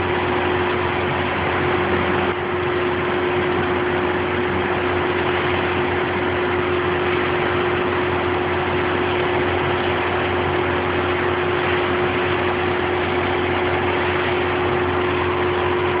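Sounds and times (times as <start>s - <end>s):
diesel truck engine humming: 0.0s - 16.0s.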